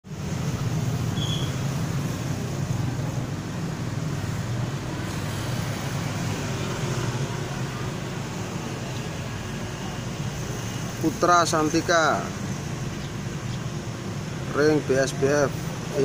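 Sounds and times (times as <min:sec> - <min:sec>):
high chirp: 0:01.1 - 0:01.6.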